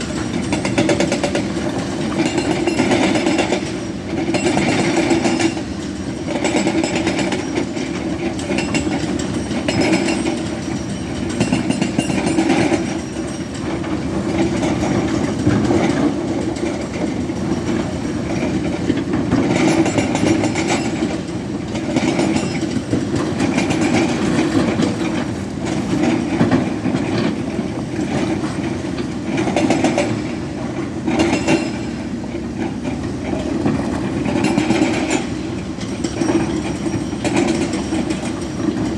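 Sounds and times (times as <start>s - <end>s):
hydraulic breaker hammering rock: 0.0s - 17.0s, 17.6s - 30.4s.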